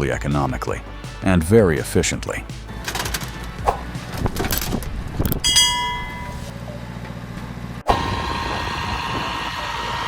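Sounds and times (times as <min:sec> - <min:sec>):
metallic clang: 0:05.4 - 0:06.5.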